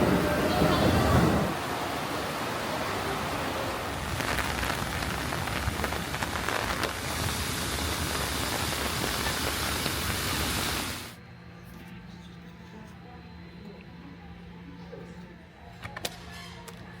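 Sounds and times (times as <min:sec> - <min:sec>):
steady rain falling: 0:00.0 - 0:11.2.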